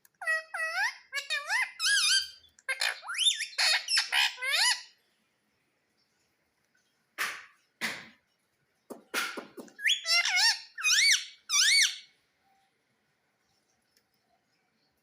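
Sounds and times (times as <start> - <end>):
parrot squawks: 0.2 - 5.0, 9.2 - 12.1.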